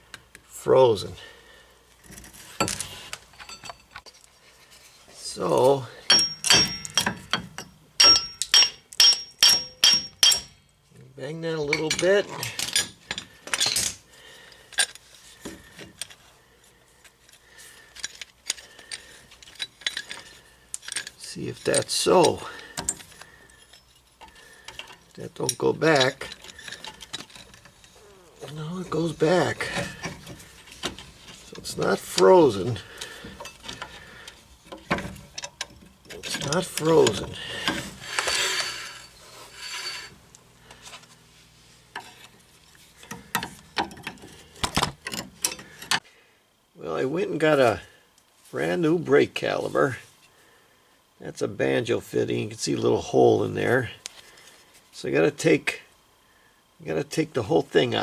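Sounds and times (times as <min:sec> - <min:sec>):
metal tools clicking and tapping: 0:06.1 - 0:10.7, 0:18.0 - 0:27.9, 0:43.0 - 0:46.0.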